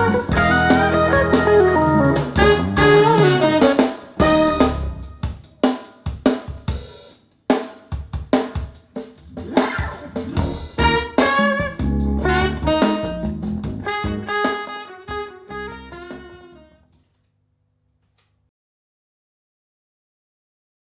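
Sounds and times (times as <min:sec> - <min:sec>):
jazz music over loudspeakers: 0:00.0 - 0:05.5, 0:09.4 - 0:16.8
drum kit: 0:00.0 - 0:16.7.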